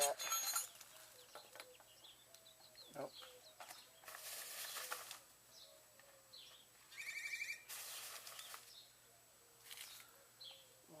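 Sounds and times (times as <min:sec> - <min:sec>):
songbirds chirping: 0:00.0 - 0:11.0
rustling noise: 0:04.0 - 0:05.3, 0:07.7 - 0:08.8
fast bird trill: 0:06.9 - 0:08.0.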